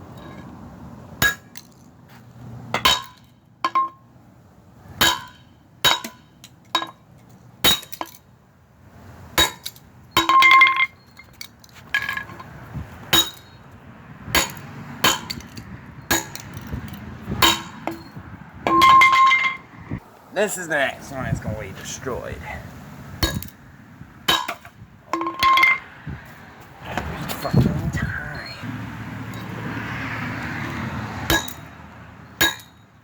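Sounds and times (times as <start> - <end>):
metallic clinking ring: 25.1 - 25.8.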